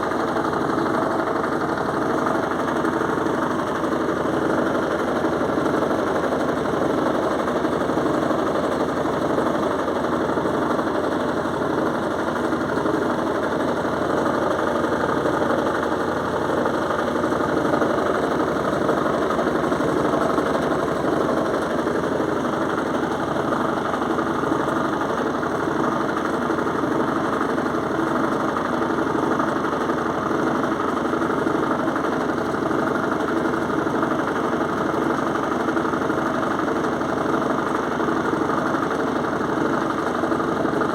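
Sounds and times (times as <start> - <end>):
washing machine spinning: 0.0 - 40.9.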